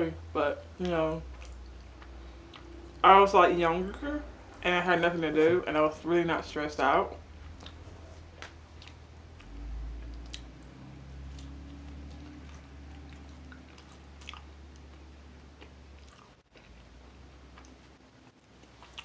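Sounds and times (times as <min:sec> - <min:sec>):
low steady hum: 0:00.0 - 0:19.0
person chewing food: 0:01.3 - 0:03.0, 0:07.4 - 0:19.0.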